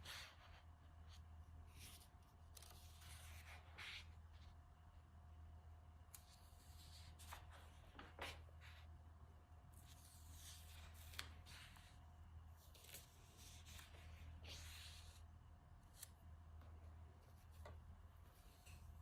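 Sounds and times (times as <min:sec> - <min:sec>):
steady low hum: 0:00.0 - 0:19.0
paper rustling: 0:01.7 - 0:04.4, 0:06.2 - 0:08.9, 0:09.8 - 0:12.0, 0:12.6 - 0:15.2.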